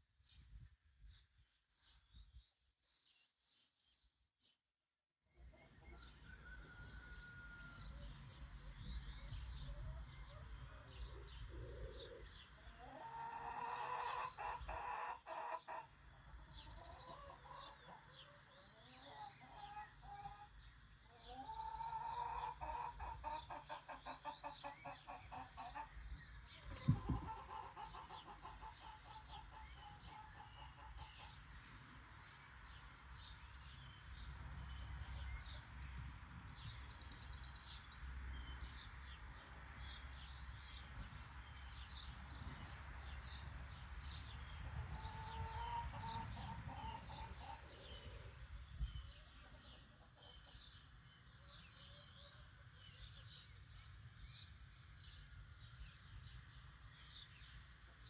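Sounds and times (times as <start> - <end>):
small birds chirping: 5.4 - 58.0
rooster crowing: 6.1 - 8.1
chicken clucking: 9.7 - 15.9, 16.6 - 26.0, 26.6 - 31.5, 45.0 - 48.3.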